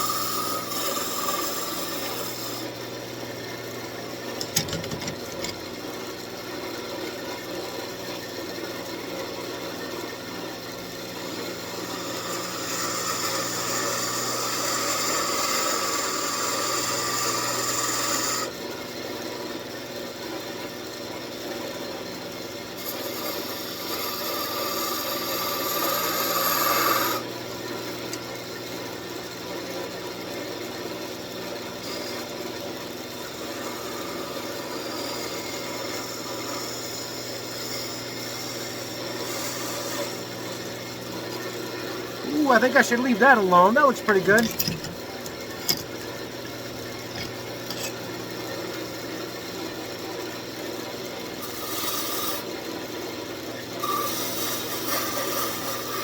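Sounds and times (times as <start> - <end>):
turning tool cutting wood: 0.0 - 2.7, 11.6 - 18.4, 42.3 - 48.0
wood lathe motor hum: 0.0 - 2.7
sharp click: 44.3 - 46.1.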